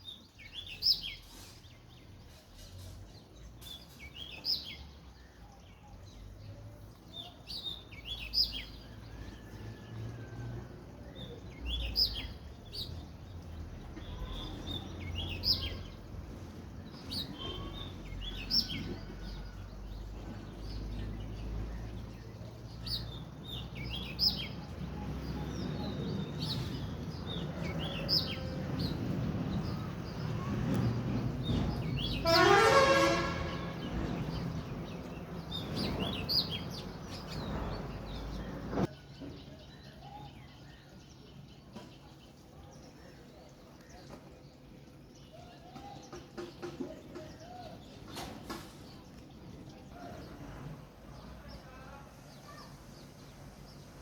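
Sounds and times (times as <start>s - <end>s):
sparrows chirping: 0.0s - 54.0s.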